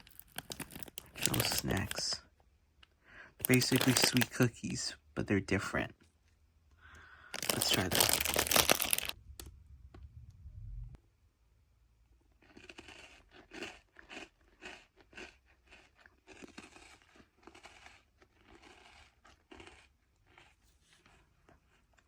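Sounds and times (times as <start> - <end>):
cookies being crunched: 0.0 - 2.2, 3.4 - 4.9, 6.9 - 9.2, 12.3 - 22.0.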